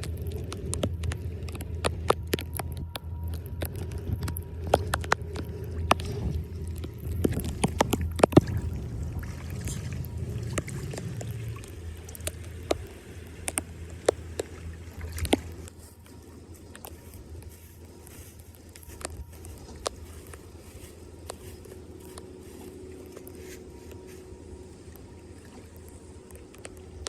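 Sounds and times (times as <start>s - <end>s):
sharp clicks and knocks: 0.0s - 8.6s
floodwater sloshing and gurgling: 0.0s - 27.0s.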